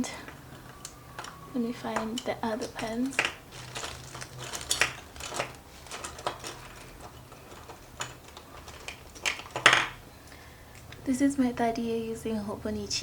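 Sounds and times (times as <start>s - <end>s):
stationery and packaging rummaging: 0.0s - 10.1s.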